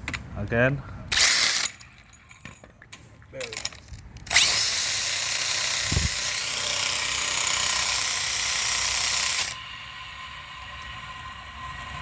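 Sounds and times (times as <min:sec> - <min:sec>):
alternator whirring grind with whine: 0:09.4 - 0:12.0.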